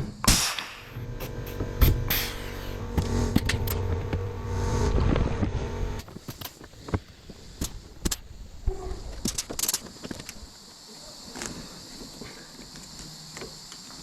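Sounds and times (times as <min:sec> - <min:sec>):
air hiss: 0:00.0 - 0:05.2
pneumatic rivet gun snapping: 0:00.2 - 0:03.8.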